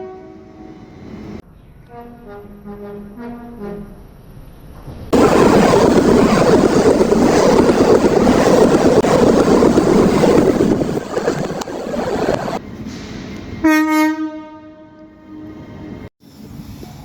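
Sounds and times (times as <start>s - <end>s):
train passing at speed: 0.0s - 1.4s, 5.1s - 17.0s.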